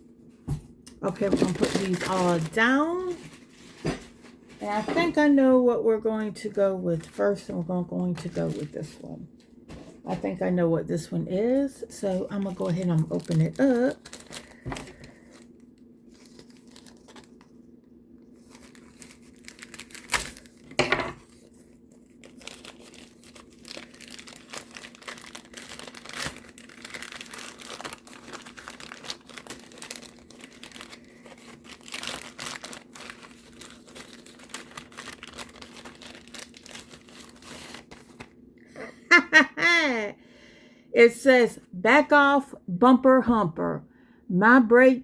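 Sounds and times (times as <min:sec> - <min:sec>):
faint steady hum: 0:00.0 - 0:45.0
wrapping crinkling and rustling: 0:01.0 - 0:05.6, 0:06.2 - 0:10.4, 0:11.3 - 0:38.4
package tearing: 0:13.0 - 0:15.5, 0:16.1 - 0:17.6, 0:18.4 - 0:38.3.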